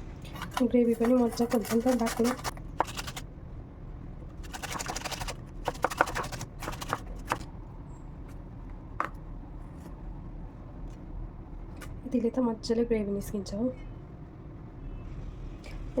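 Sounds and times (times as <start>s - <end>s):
low steady hum: 0.0s - 16.0s
tomato scraping on grater: 0.3s - 3.2s, 4.4s - 7.4s.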